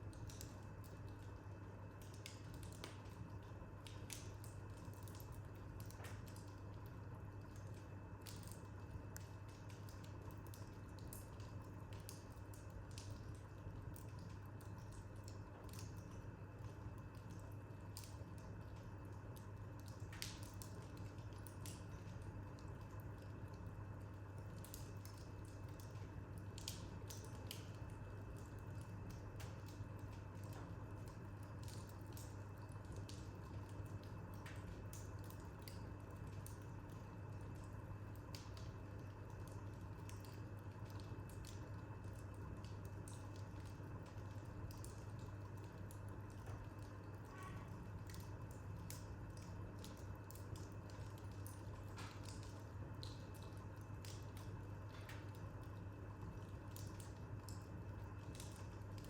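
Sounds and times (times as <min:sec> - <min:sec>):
faint steady low hum: 0:00.0 - 0:59.0
wood fire crackling: 0:00.0 - 0:59.0.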